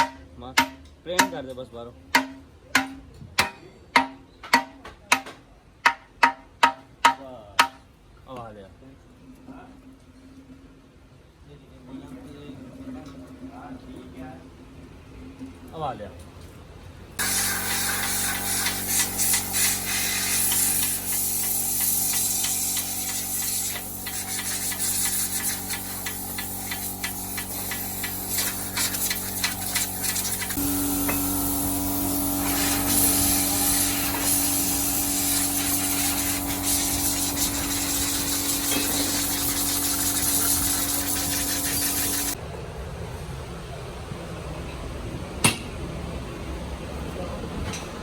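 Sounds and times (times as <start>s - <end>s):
steady hum: 16.9s - 42.8s
machine running with hiss: 17.2s - 42.4s.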